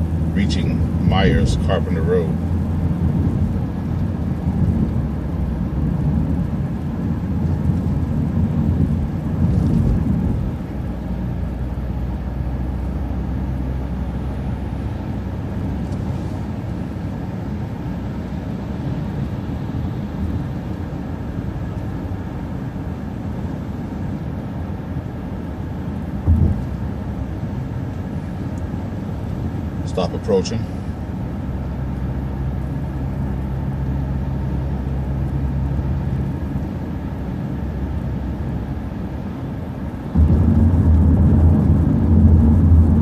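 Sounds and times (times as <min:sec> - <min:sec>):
bus engine and road noise: 0:00.0 - 0:43.0
short thump: 0:26.2 - 0:26.7.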